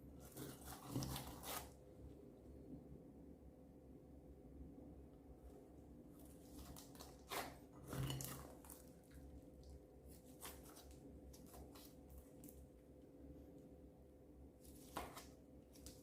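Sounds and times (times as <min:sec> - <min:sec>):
slime squelching: 0:00.2 - 0:01.7, 0:06.2 - 0:12.7.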